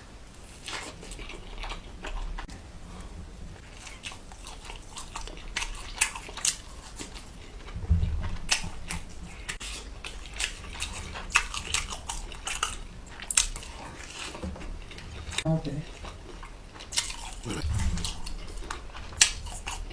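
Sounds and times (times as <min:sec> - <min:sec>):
person chewing and crunching: 0:00.4 - 0:02.5, 0:03.6 - 0:07.8, 0:08.5 - 0:19.9
dull low bump: 0:07.6 - 0:09.6, 0:17.6 - 0:19.9.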